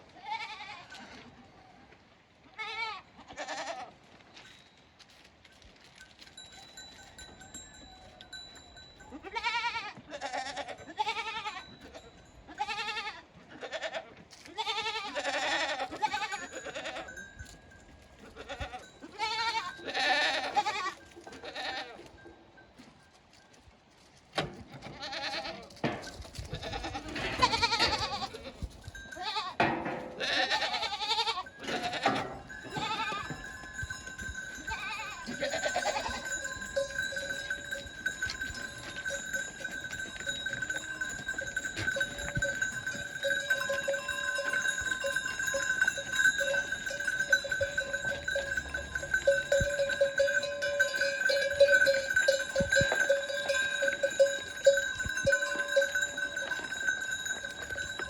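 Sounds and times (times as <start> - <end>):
goats bleating: 0.1 - 1.2, 2.6 - 3.9, 9.1 - 17.3, 18.2 - 22.1, 24.8 - 58.0
herd bells ringing: 6.0 - 9.8, 14.8 - 23.4, 25.2 - 58.0.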